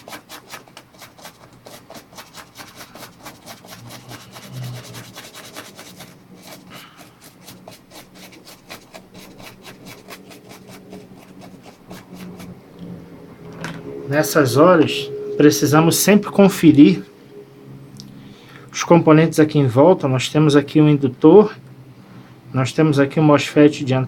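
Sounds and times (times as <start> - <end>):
small brush scrubbing circuit board: 0.0 - 12.6.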